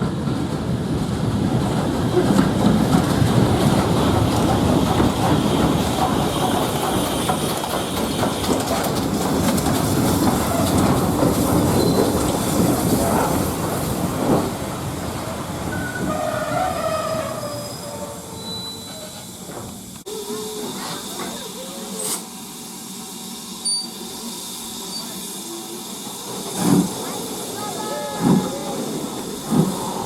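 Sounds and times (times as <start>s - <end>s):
train wheels clattering over rails: 0.0s - 20.1s, 25.9s - 30.0s
high wheel squeal: 15.7s - 19.5s.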